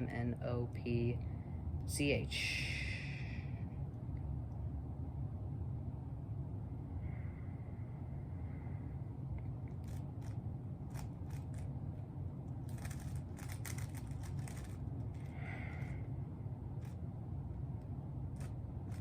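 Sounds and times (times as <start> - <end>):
steady low hum: 0.0 - 19.0
puzzle cube clicking as turned: 9.8 - 11.7, 12.7 - 15.2.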